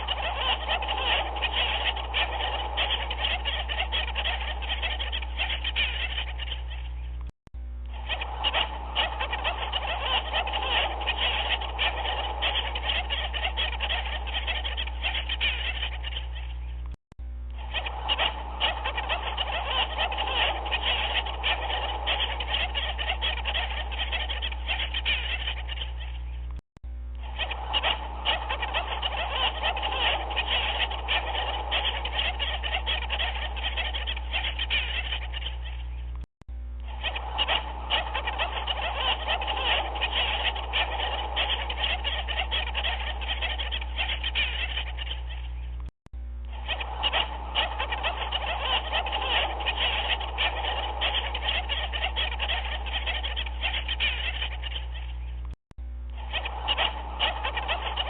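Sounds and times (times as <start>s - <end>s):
chorus of animal calls: 0.0s - 7.3s, 7.9s - 36.2s, 36.8s - 45.8s, 46.4s - 55.5s, 56.1s - 58.0s
steady low hum: 0.0s - 58.0s.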